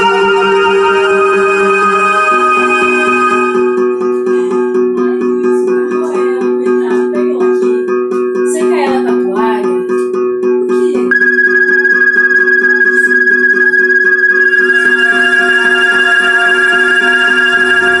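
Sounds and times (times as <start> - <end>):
low drone notes: 0.0 - 5.9
plucked string notes: 0.0 - 18.0.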